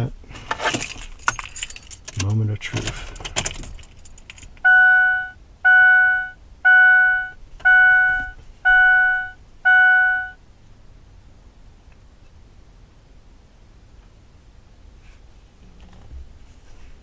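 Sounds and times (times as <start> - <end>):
dashboard warning chime: 4.6 - 10.4.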